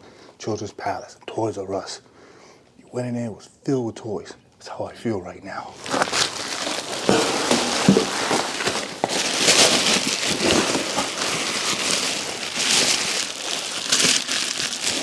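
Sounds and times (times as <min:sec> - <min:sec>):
plastic packaging crinkling: 0:05.7 - 0:15.0.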